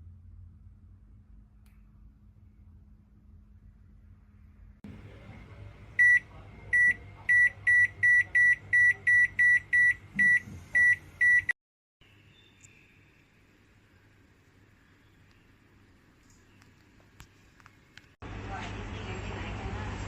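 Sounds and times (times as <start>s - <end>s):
low hum: 0.0s - 15.6s
microwave keypad beeping: 6.0s - 11.6s.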